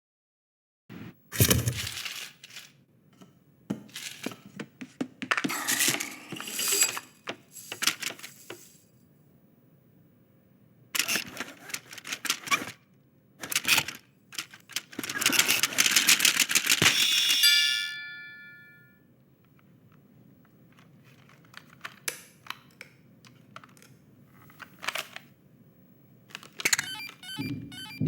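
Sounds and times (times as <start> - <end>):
rapid clicks and clattering: 13.4 - 16.8.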